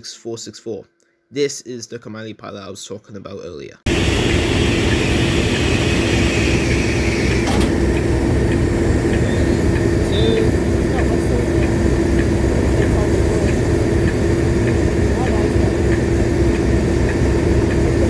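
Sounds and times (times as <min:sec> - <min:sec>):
locomotive rumbling: 0:03.9 - 0:18.0.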